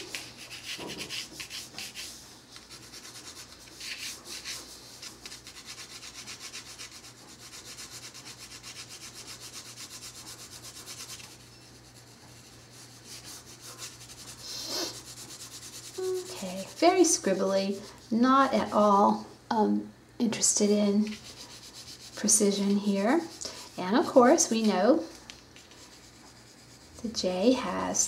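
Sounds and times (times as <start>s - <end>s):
pencil scribbling on paper: 0.0s - 18.2s, 21.0s - 24.7s.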